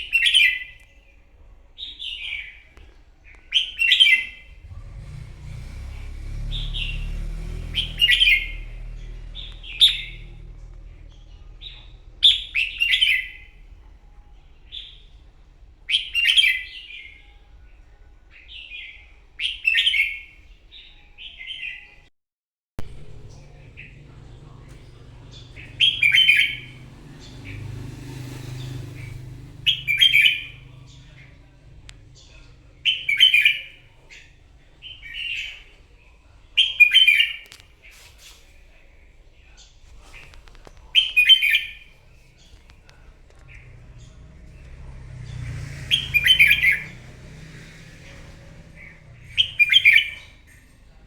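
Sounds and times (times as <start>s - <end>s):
faint low rumble: 4.4s - 15.8s, 22.8s - 36.5s, 38.6s - 51.0s
bird warbling song: 22.9s - 35.8s, 40.1s - 50.9s.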